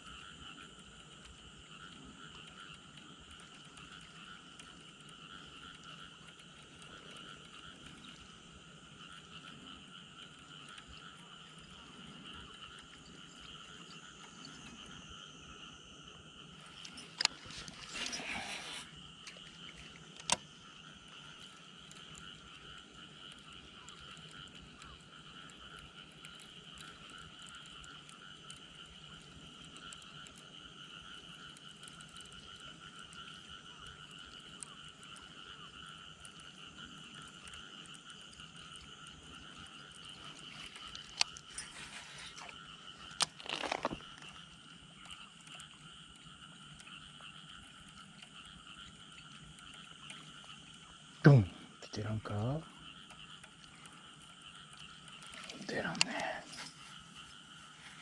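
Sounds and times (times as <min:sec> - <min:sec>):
frogs calling: 0:00.0 - 0:58.0
sharp clicks: 0:19.2 - 0:20.5.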